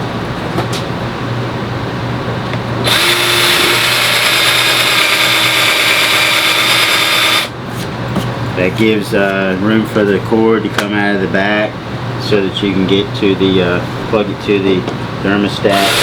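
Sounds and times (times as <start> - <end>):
electric drill boring into plastic: 2.8 - 7.5, 15.7 - 16.0.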